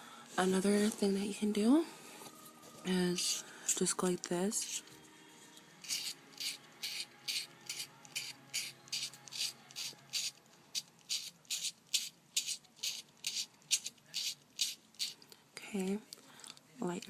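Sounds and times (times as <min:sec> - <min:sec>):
plastic lighter rubbed back and forth: 0:05.8 - 0:15.2.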